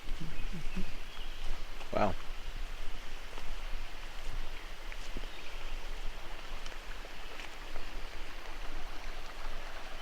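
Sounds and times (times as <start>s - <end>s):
creek water rushing: 0.0s - 10.0s
faint light ticks and crackles: 3.3s - 10.0s.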